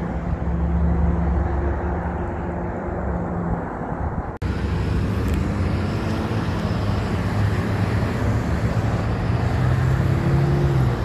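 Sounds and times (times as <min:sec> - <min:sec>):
heavy truck engine droning: 0:04.4 - 0:11.0.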